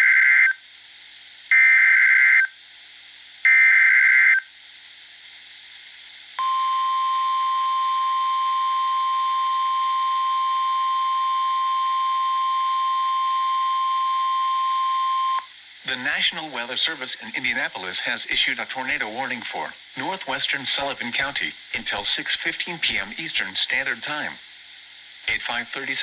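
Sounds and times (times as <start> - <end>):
steady single-pitch alarm tone: 0.0 - 0.6, 1.5 - 2.6, 3.5 - 4.5, 6.4 - 15.5.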